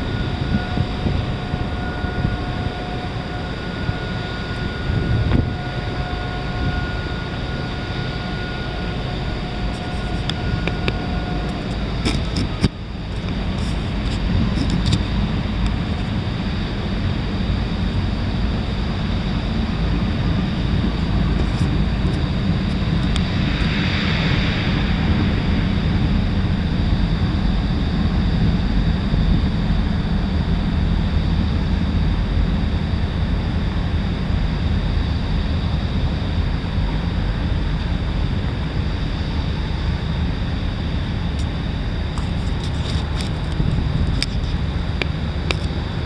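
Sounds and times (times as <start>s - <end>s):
hissing swell: 0.0s - 31.8s
low engine rumble: 0.0s - 46.0s
wind noise on microphone: 0.0s - 46.0s.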